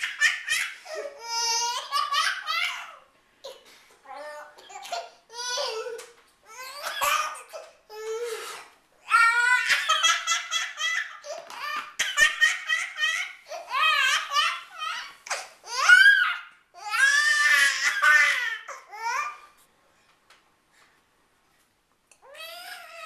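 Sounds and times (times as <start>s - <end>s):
baby laughing: 0.0s - 3.6s, 9.1s - 19.2s.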